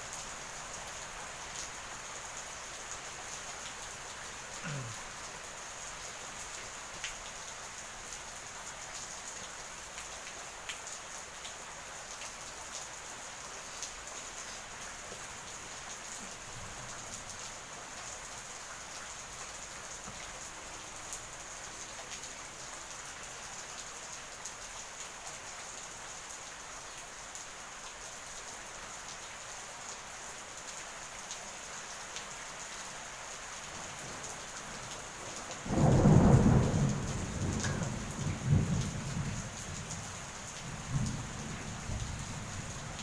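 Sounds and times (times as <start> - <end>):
steady rain hissing: 0.0 - 43.0
thunder clap rumbling: 35.7 - 39.4.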